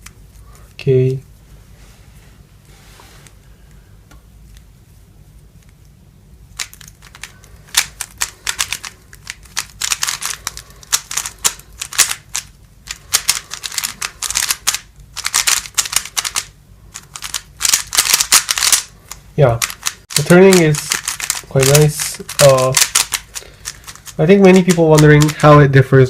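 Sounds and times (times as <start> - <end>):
plastic puzzle cube turns clacking: 6.6 - 25.5.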